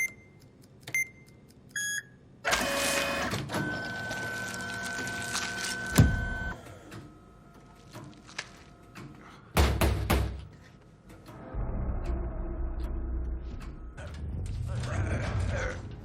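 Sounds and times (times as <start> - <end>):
keypad beeps: 0.0 - 2.2
vending machine motor whirring: 2.5 - 7.7.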